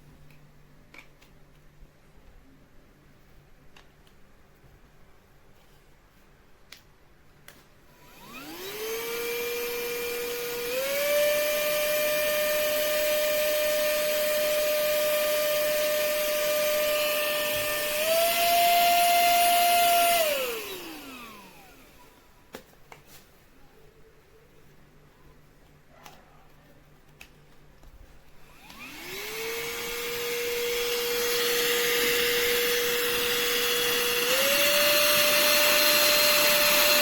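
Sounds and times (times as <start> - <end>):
small motor whining: 8.0 - 22.2, 28.4 - 37.0.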